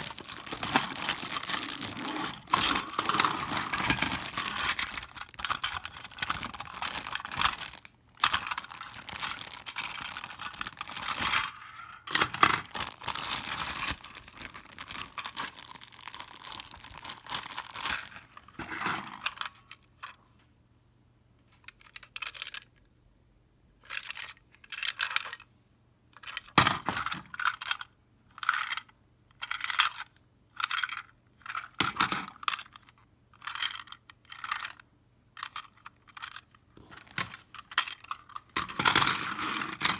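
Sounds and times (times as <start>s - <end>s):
packaging rustling and tearing: 0.0s - 18.8s
plastic parts rattling and clicking: 0.0s - 20.2s, 21.6s - 22.7s, 23.8s - 25.4s, 26.2s - 34.8s, 35.4s - 39.9s.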